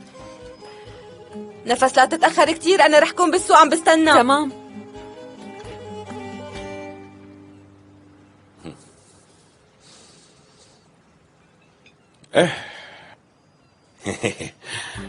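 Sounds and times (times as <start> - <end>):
person vocalizing: 8.6 - 9.1.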